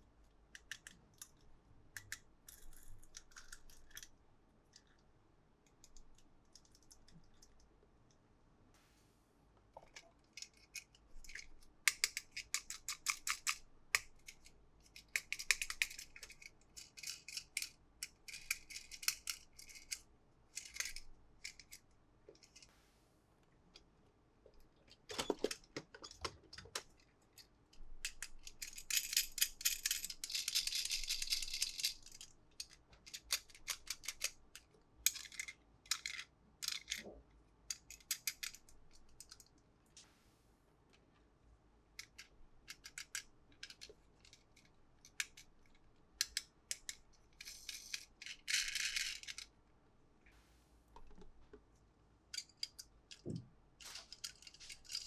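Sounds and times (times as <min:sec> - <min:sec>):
toy cars clicking: 0:00.6 - 0:01.4, 0:10.3 - 0:21.8, 0:25.2 - 0:37.1, 0:37.7 - 0:39.5, 0:42.0 - 0:45.5, 0:46.2 - 0:49.5, 0:52.3 - 0:53.2.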